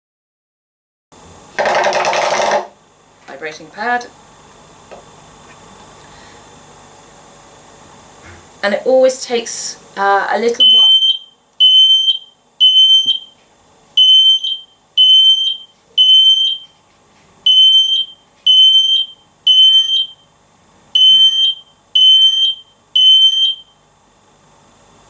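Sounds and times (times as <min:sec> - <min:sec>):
smoke alarm beeping: 0:10.6 - 0:13.4, 0:14.0 - 0:16.8, 0:17.4 - 0:20.3, 0:20.9 - 0:23.8.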